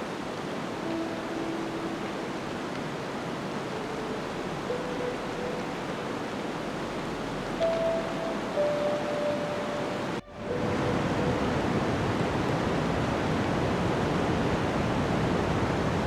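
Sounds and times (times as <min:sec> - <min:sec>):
blizzard wind rushing: 0:00.0 - 0:16.0
slow held background music: 0:00.3 - 0:12.6.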